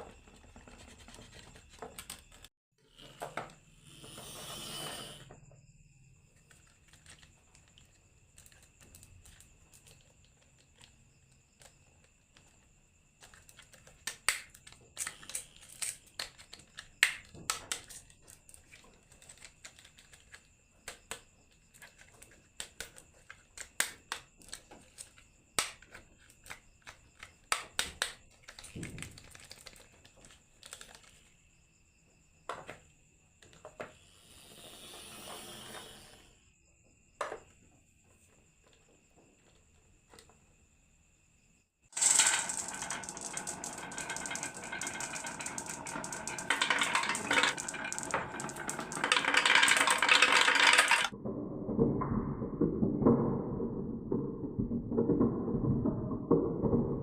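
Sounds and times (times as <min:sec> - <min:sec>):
marbles clicking and clattering: 0:42.0 - 0:57.0.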